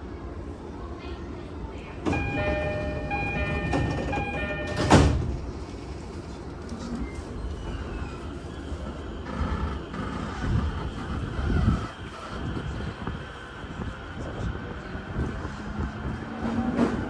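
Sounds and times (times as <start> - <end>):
train door chime: 2.0 - 5.4
rumbling cabin noise: 2.0 - 5.9, 9.2 - 13.4
sliding doors shutting thud: 2.1 - 5.5.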